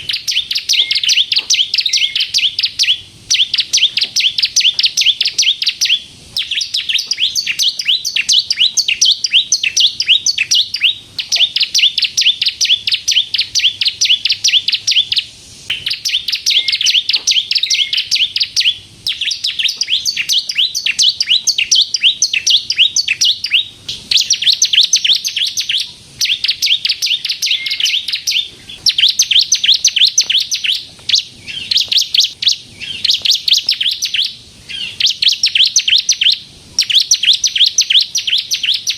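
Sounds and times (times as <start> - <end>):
bird singing rapid ticking notes: 0.0 - 38.9.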